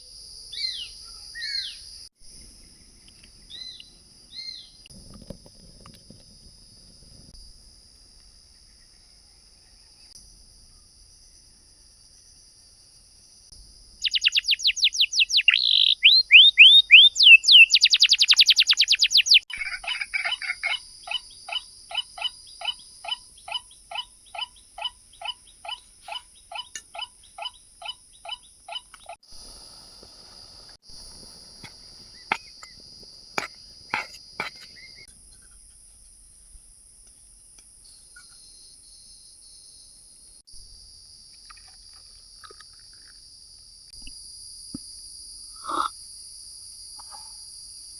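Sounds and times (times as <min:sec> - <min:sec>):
insect trilling: 0:14.0 - 0:35.1, 0:45.4 - 0:46.0
lower bird call: 0:14.0 - 0:35.1.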